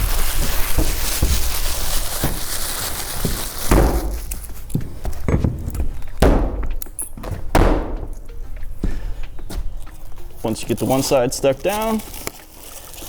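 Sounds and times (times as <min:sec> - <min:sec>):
dull thuds and knocks: 0:00.5 - 0:09.7.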